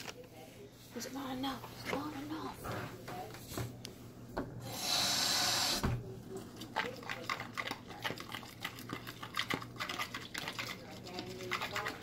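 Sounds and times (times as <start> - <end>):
waffle maker hissing: 4.6 - 5.9.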